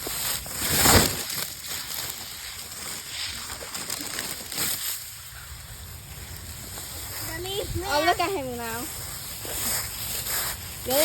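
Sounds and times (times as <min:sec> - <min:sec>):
dry leaves rustling: 0:00.0 - 0:11.0
wind buffeting microphone: 0:05.4 - 0:10.0.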